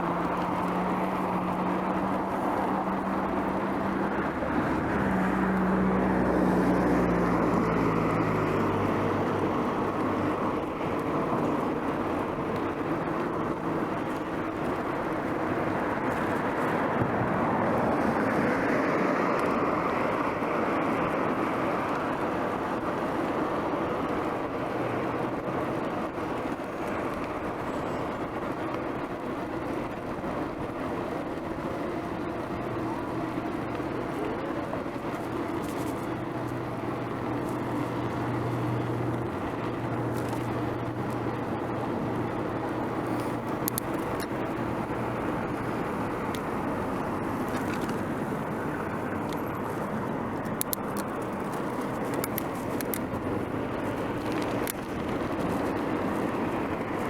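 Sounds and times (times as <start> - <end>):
car traffic: 0.0 - 57.0
low engine hum: 0.0 - 57.0
wind and tyre rush: 0.0 - 57.0
sharp clicks: 43.2 - 44.4, 50.4 - 53.2.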